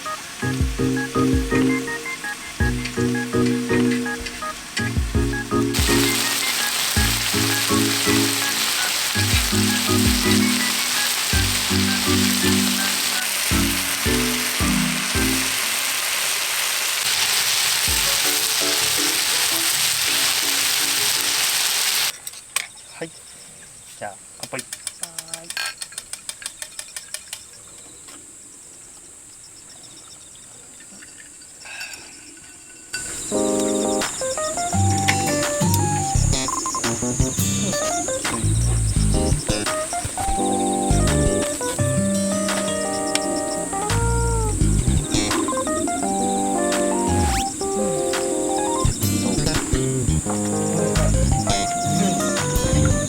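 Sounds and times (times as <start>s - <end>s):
food sizzling in a pan: 0.0s - 22.2s, 32.7s - 53.0s
crickets trilling: 0.0s - 53.0s
background music with kick drum: 0.4s - 8.6s, 9.2s - 15.6s, 17.9s - 19.0s, 33.4s - 53.0s.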